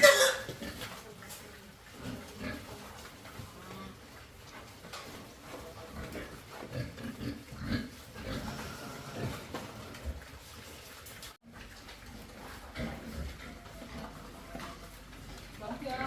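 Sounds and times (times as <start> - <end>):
pigs grunting: 1.8 - 4.2, 5.6 - 10.2, 12.0 - 16.0.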